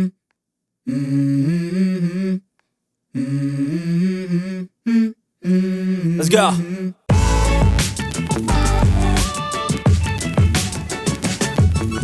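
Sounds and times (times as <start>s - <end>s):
person singing wordless tune: 0.9s - 2.4s, 3.2s - 7.0s.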